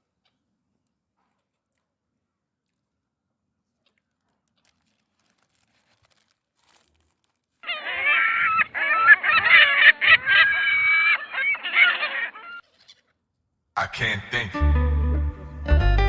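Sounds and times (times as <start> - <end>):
seagulls squawking: 7.7 - 12.6.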